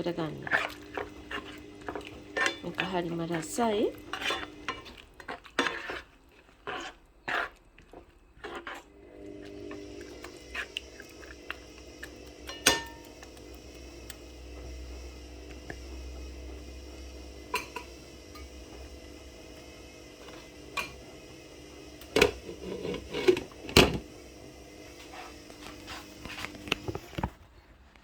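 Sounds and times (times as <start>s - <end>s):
metal spoon clinking on pot: 12.5s - 13.3s.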